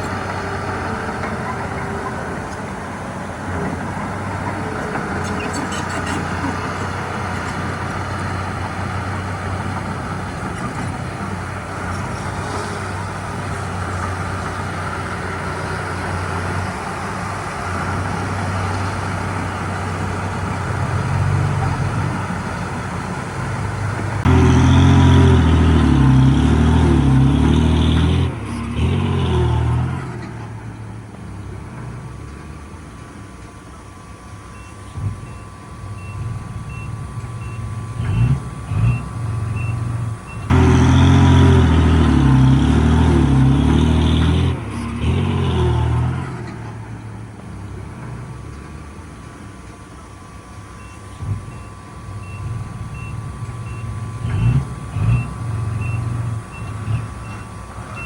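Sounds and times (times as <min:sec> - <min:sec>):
heavy diesel engine revving: 0:00.0 - 0:58.0
reversing alarm beeping: 0:34.1 - 0:42.4, 0:50.7 - 0:58.0.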